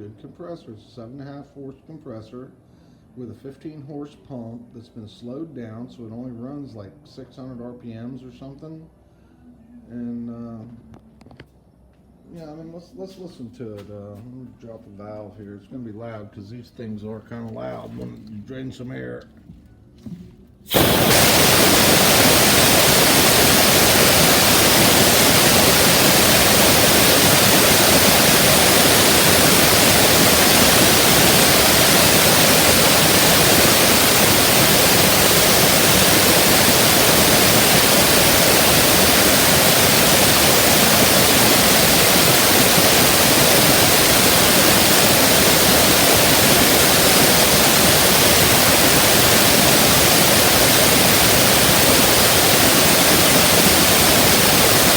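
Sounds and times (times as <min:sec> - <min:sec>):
compressed air hissing: 0:20.7 - 0:54.9.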